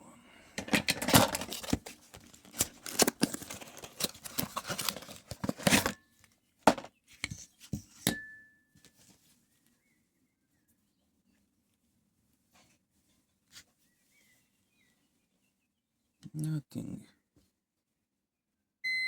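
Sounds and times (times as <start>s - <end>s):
handling noise rustling and scraping: 0.6s - 8.2s, 8.8s - 9.9s.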